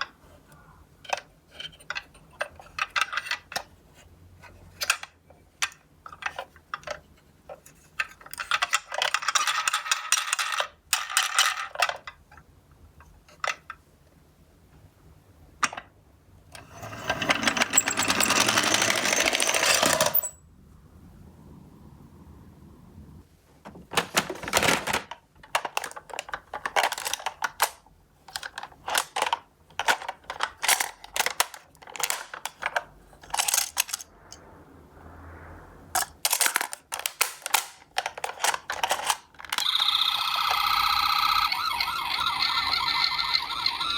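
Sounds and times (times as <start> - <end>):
toy cars clicking and clinking: 7.6 - 12.2, 16.6 - 20.4, 24.4 - 34.1, 36.0 - 43.9
toy car rolling rattle: 16.6 - 20.4, 24.0 - 34.1, 36.0 - 43.9.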